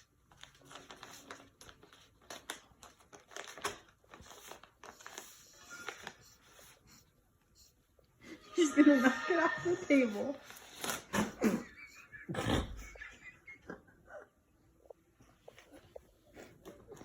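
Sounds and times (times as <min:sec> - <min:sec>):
paper bag crinkling and rustling: 0:00.0 - 0:06.9, 0:09.9 - 0:11.6.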